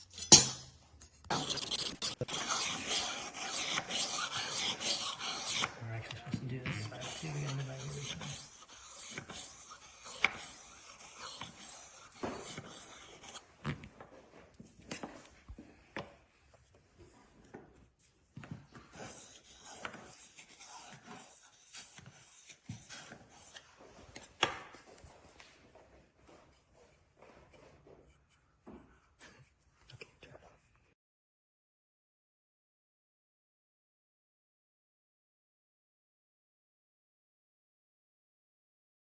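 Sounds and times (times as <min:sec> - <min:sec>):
knife scraping on sharpener: 0:01.3 - 0:13.9, 0:18.4 - 0:25.1.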